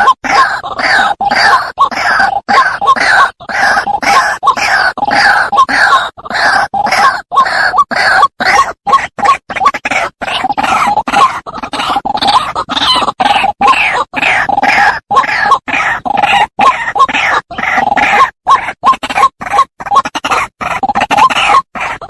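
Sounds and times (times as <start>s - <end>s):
bird harsh croaking calls: 0.0s - 22.0s.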